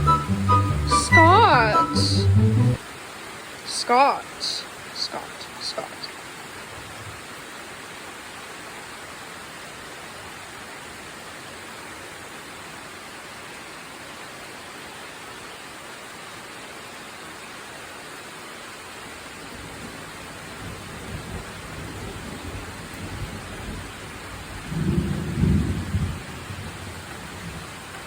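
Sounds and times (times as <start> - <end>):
steady rain falling: 0.0 - 28.0
low rumble of thunder: 19.7 - 27.9.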